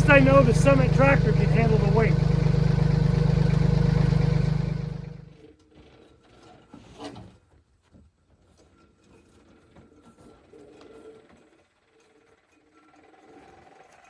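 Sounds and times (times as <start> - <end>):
tractor engine running: 0.0 - 5.3
engine winding down: 0.0 - 5.4.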